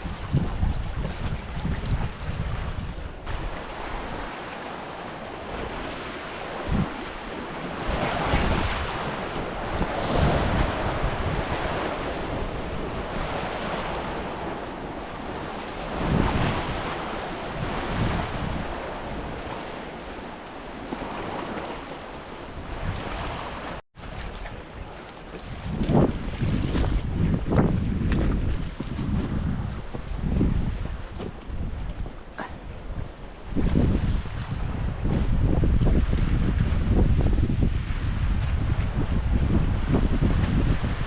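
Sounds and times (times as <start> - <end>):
waves washing: 0.0 - 41.0
wind buffeting microphone: 0.0 - 41.0.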